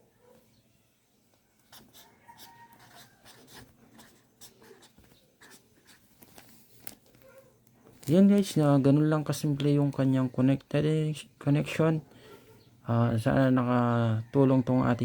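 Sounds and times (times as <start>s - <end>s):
pen writing on paper: 1.7s - 6.1s.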